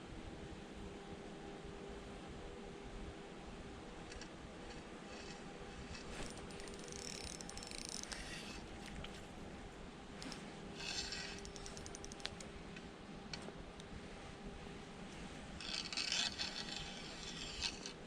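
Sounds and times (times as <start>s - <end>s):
low steady hum: 0.0s - 18.0s
small clicks: 4.1s - 9.2s, 10.2s - 13.9s.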